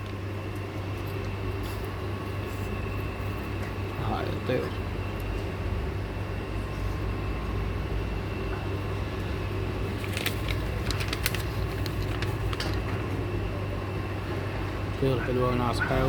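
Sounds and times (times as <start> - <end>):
low mechanical hum with whine: 0.0 - 16.0.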